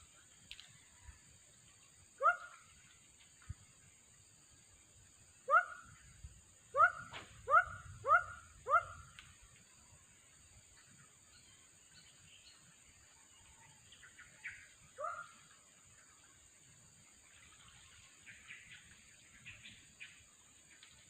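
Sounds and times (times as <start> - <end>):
animal sharp pitched calls: 6.8 - 9.0.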